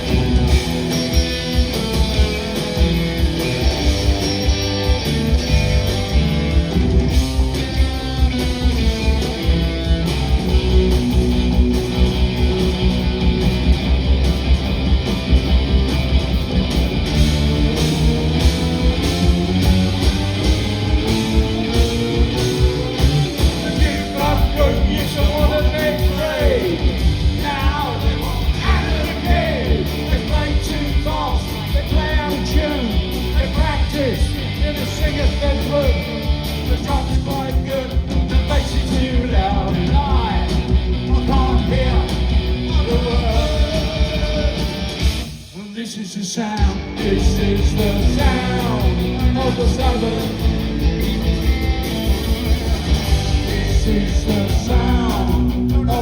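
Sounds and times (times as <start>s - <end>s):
punk rock band playing live: 0.0s - 56.0s.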